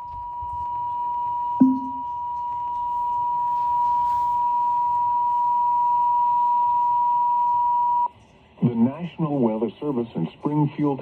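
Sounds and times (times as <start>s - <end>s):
steady high alert tone: 1.6s - 2.0s
short low blip: 1.6s - 2.1s.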